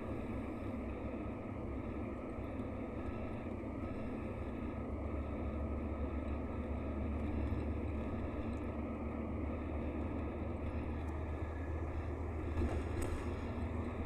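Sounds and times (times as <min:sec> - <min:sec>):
diesel engine low rumble: 0:00.0 - 0:14.0.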